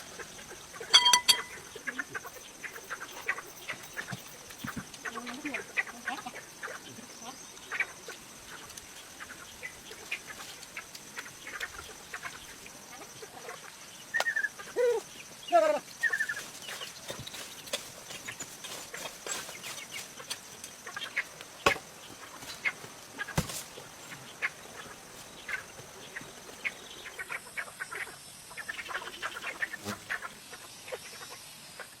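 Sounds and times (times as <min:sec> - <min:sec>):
domestic fowl calling: 0:18.1 - 0:32.0.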